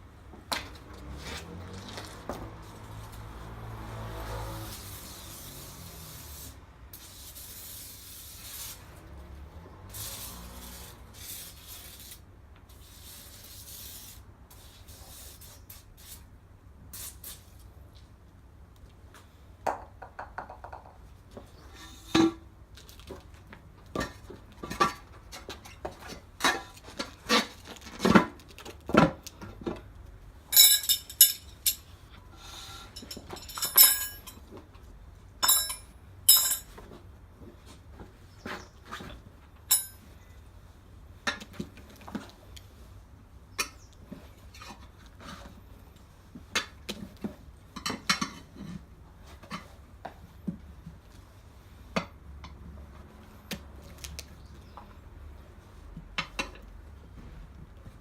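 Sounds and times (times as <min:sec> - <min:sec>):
hissing and rubbing: 0:04.0 - 0:16.3
tools clanking on wheel rim: 0:19.7 - 0:29.9, 0:30.5 - 0:34.8, 0:35.4 - 0:37.1, 0:37.9 - 0:40.4, 0:46.4 - 0:50.2.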